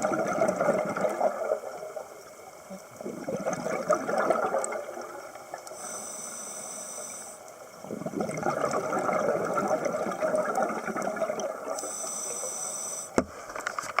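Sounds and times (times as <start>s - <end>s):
bubbling exhale: 3.0s - 13.1s
regulator hissing inhale: 5.7s - 7.6s, 11.8s - 13.6s.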